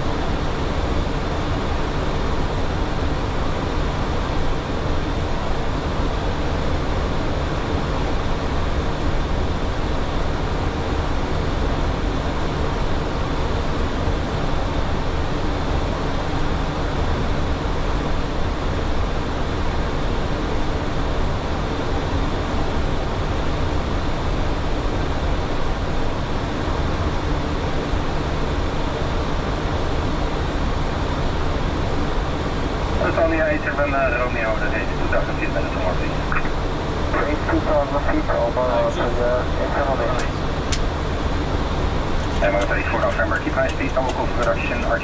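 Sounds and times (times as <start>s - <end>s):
jet engines droning: 0.0s - 45.0s.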